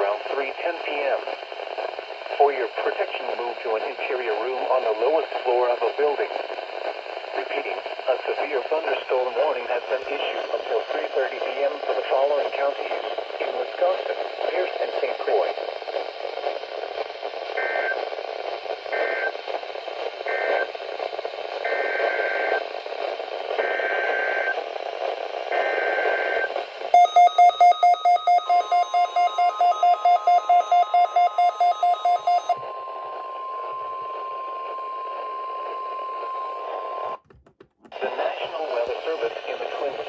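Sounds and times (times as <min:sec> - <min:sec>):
radio hiss: 0:00.0 - 0:26.9, 0:38.0 - 0:40.0
rapid electronic beeping: 0:27.0 - 0:32.6
data bursts: 0:27.0 - 0:34.7
steady warning tone: 0:27.0 - 0:37.2.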